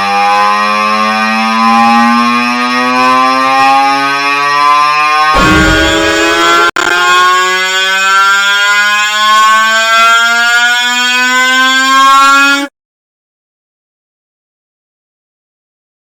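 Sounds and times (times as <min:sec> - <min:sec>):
distorted drawn-out voice tone: 0:05.4 - 0:06.9.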